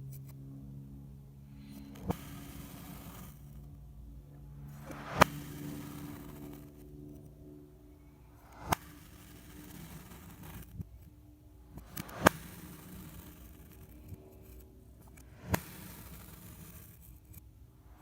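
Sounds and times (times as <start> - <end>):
knife cutting through sand: 8.4 - 10.8, 11.8 - 17.4.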